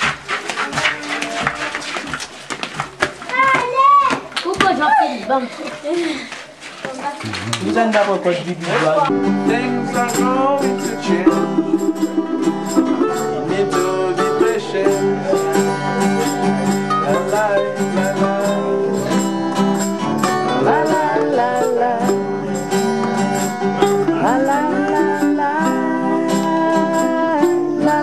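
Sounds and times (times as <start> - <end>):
plucked string music: 9.1 - 28.0.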